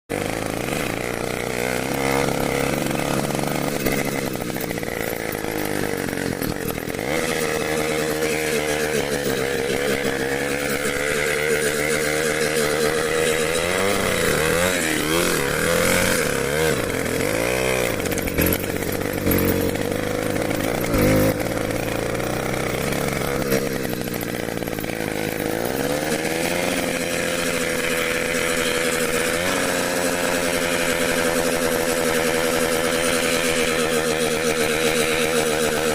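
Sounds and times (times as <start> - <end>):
small motorcycle engine revving: 0.1 - 35.9.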